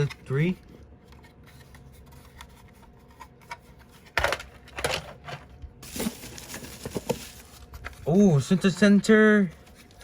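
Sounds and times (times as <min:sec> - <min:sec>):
packaging clicks and rustles: 0:04.1 - 0:08.8
crinkling wrapping: 0:05.8 - 0:08.4.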